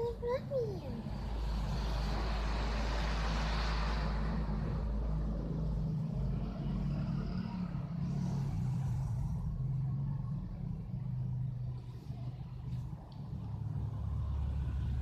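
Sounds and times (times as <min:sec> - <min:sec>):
low mechanical rumble: 0:04.0 - 0:15.0.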